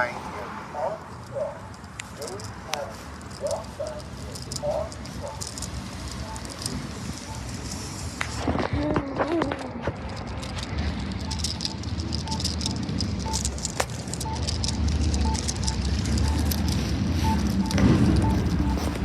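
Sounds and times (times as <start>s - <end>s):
street traffic rumble: 0.0s - 19.0s
short high beeps: 4.4s - 7.9s, 11.3s - 19.0s.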